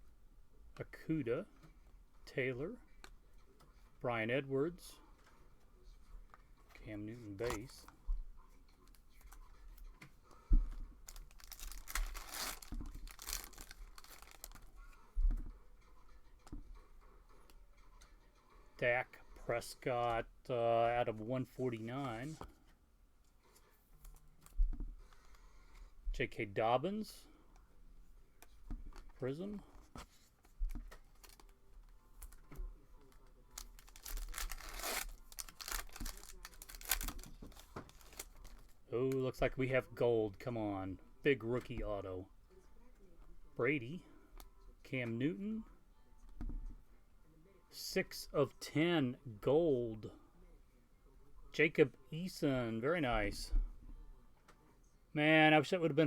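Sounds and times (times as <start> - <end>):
cards clicking and rustling: 6.3 - 8.0, 11.0 - 14.7, 28.4 - 31.6, 32.2 - 39.2
foil wrapper tearing and crinkling: 11.1 - 14.7, 33.6 - 38.7.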